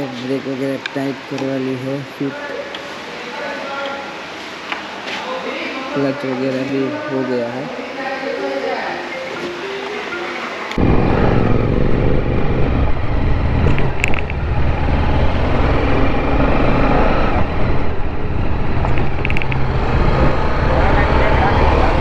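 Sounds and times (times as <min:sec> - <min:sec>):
wind noise on microphone: 0:10.8 - 0:20.6
motorcycle engine hum: 0:10.8 - 0:22.0.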